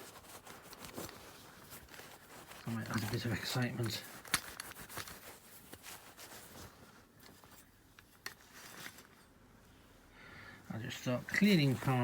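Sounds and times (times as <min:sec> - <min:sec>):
cloth rubbing on metal: 0:00.0 - 0:09.3, 0:10.8 - 0:12.0.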